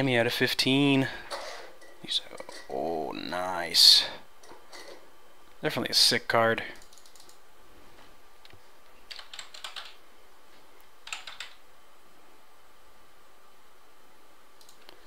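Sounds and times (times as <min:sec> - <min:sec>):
faint room noise: 0:00.0 - 0:15.0
computer keyboard typing: 0:06.8 - 0:07.4, 0:09.1 - 0:10.0, 0:11.0 - 0:11.6.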